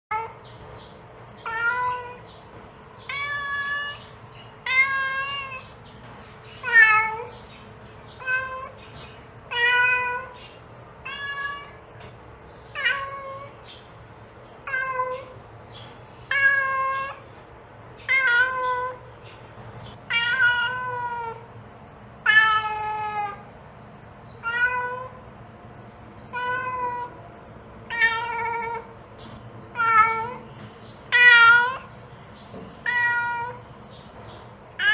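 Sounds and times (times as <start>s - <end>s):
cat meowing: 1.4s - 2.3s, 3.0s - 5.8s, 6.6s - 7.4s, 8.2s - 8.8s, 9.5s - 10.4s, 11.0s - 11.9s, 12.7s - 13.6s, 14.6s - 15.4s, 16.3s - 17.3s, 18.0s - 19.1s, 20.1s - 21.5s, 22.2s - 23.5s, 24.4s - 25.2s, 26.2s - 27.2s, 27.8s - 29.0s, 29.7s - 30.5s, 31.1s - 32.0s, 32.8s - 33.6s.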